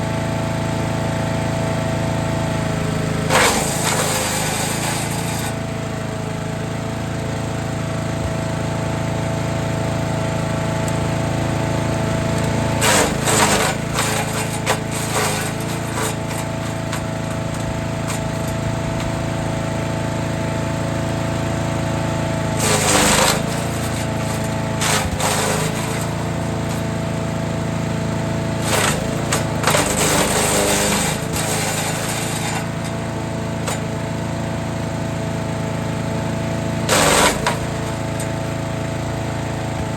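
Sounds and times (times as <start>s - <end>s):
wood chipper running: 0.0s - 39.9s
branches rattling through chipper: 3.3s - 5.6s, 12.3s - 19.6s, 22.6s - 26.9s, 28.6s - 33.0s.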